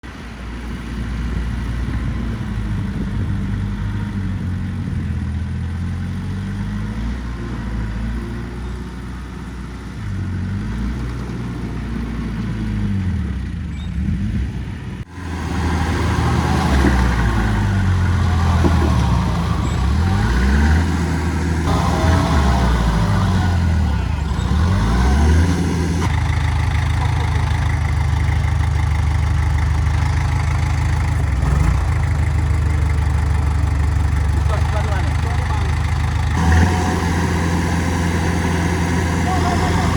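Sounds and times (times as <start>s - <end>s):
diesel engines revving under load: 0.0s - 39.9s.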